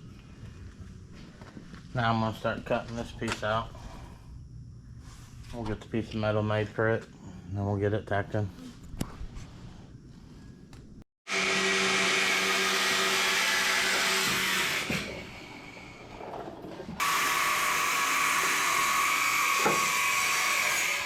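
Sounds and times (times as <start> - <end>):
angle grinder cutting sheet steel: 11.3 - 21.0.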